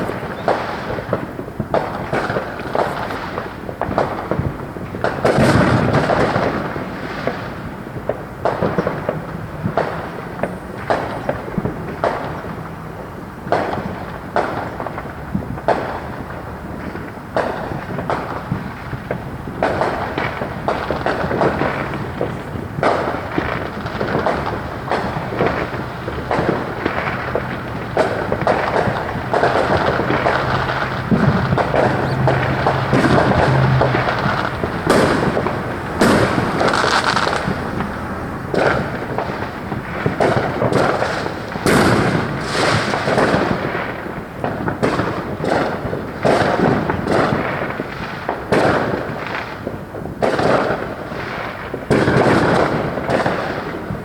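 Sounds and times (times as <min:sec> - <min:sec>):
fireworks crackling: 0:00.0 - 0:10.2, 0:18.4 - 0:50.6
fireworks exploding: 0:00.0 - 0:12.7, 0:17.4 - 0:53.5.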